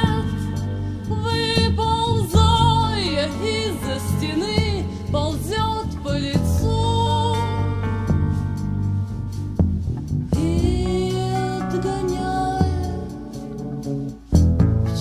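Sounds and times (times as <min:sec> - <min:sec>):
woman singing: 0:00.0 - 0:08.2, 0:10.3 - 0:13.8
instrumental accompaniment: 0:00.0 - 0:15.0.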